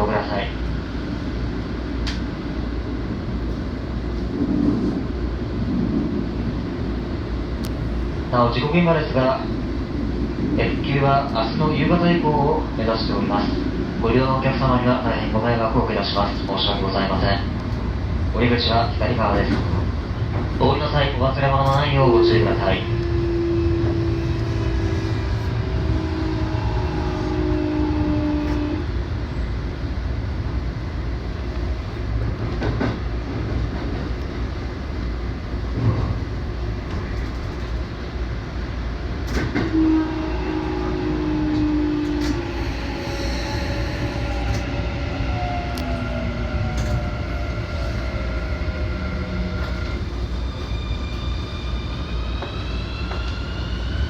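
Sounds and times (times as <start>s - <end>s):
train wheels rumbling on rail: 0.0s - 54.0s
train motor whine: 39.3s - 54.0s.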